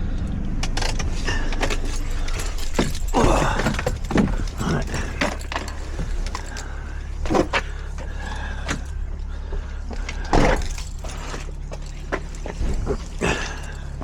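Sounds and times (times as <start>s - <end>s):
van engine idling: 0.0s - 14.0s
clicks and knocks in cab: 0.5s - 14.0s.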